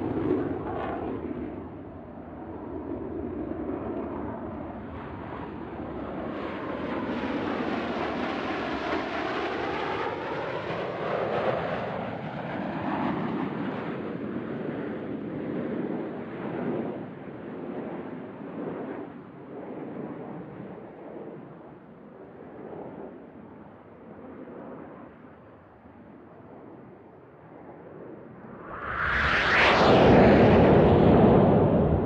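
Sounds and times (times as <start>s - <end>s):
aircraft flying past: 27.6s - 32.0s.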